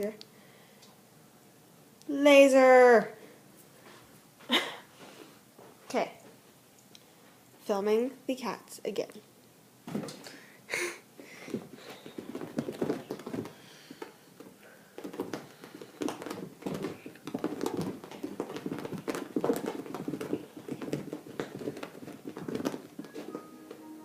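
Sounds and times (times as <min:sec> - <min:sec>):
cats' paws scampering: 0:11.2 - 0:23.8.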